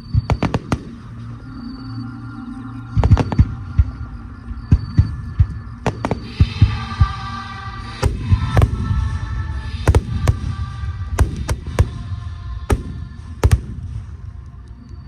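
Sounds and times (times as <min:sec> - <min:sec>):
low rumble: 0:07.8 - 0:15.0
fireworks bursting in bangs: 0:08.0 - 0:14.4.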